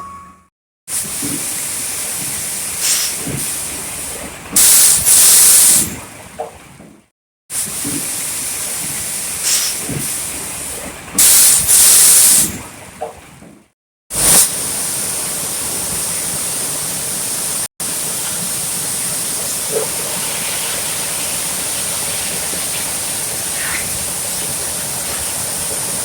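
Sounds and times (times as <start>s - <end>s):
hiss blast: 2.8s - 3.6s, 4.6s - 5.9s, 9.4s - 10.2s, 11.2s - 12.5s, 14.2s - 17.0s
loud hissing rush of machinery: 14.2s - 26.0s.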